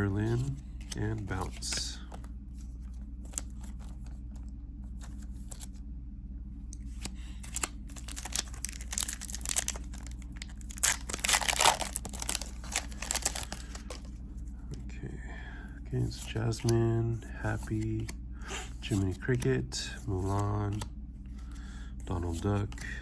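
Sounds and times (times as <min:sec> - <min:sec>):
cards rustling: 0:00.0 - 0:05.8, 0:06.7 - 0:14.8, 0:16.0 - 0:23.0
foil wrapper tearing and crinkling: 0:07.5 - 0:14.0.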